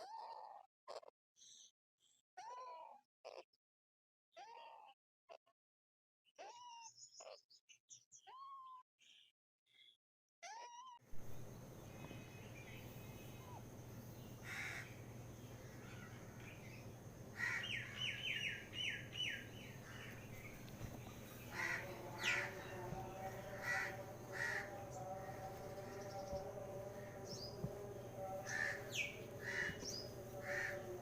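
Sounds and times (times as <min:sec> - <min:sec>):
parrot calling and chirping: 0:14.3 - 0:26.4, 0:28.2 - 0:31.0.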